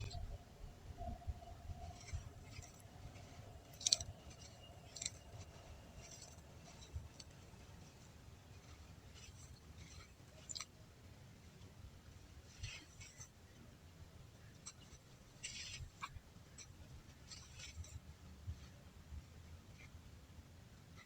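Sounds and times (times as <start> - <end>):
dry crunching and crackling: 1.8 - 10.8.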